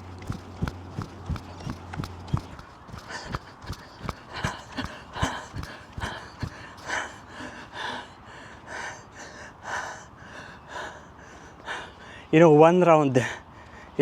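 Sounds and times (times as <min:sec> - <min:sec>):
running footsteps: 0:00.0 - 0:08.0
man panting hard: 0:00.2 - 0:12.3.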